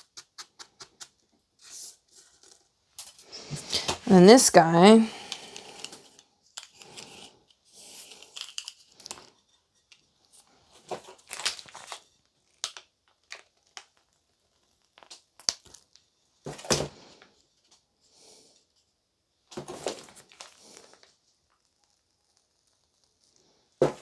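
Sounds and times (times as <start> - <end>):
plastic toys rustling and clicking: 5.3 - 16.0.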